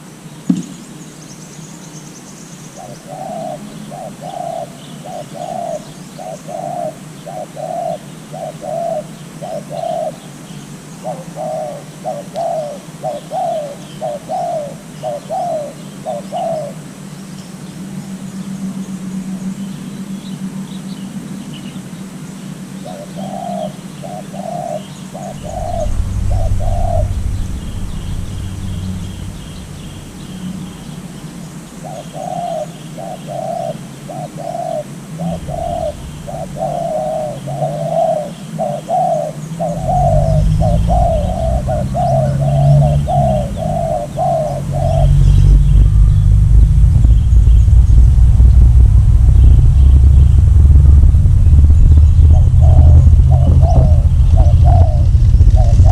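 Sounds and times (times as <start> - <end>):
small birds chirping: 0.0 - 55.9
dove cooing: 2.8 - 10.2, 11.0 - 16.8, 22.8 - 46.1, 52.2 - 55.9
low rumble: 17.7 - 21.6, 25.1 - 32.0, 35.1 - 37.8, 39.6 - 55.9.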